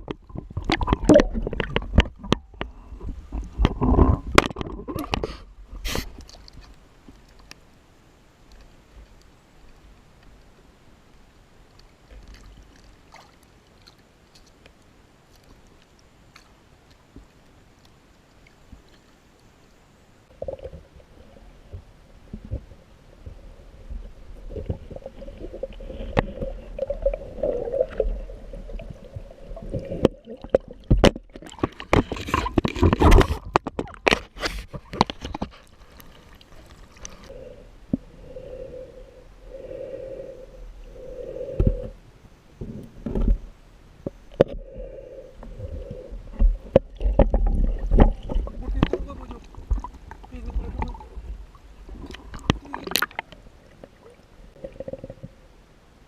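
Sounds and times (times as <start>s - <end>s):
underwater gurgling: 0.0s - 7.6s, 20.2s - 55.8s.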